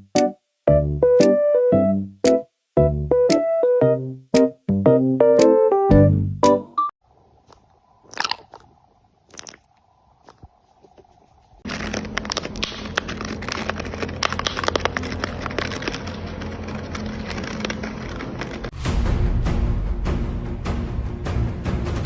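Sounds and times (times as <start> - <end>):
parrot crunching food: 7.4 - 18.7.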